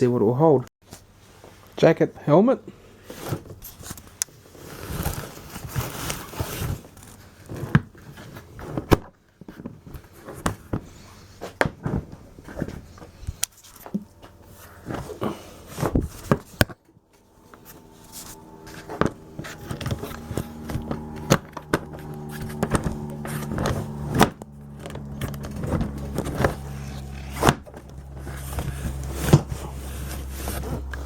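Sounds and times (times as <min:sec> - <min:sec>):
fabric rustling: 0:25.4 - 0:31.0.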